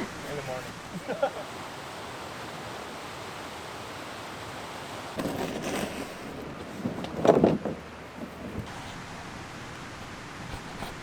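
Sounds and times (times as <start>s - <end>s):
river rapids rushing: 0.0s - 6.8s.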